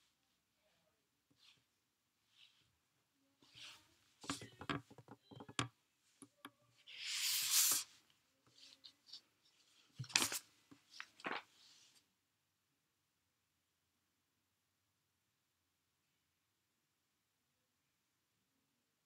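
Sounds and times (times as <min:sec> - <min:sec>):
long hiss: 0:06.9 - 0:07.9.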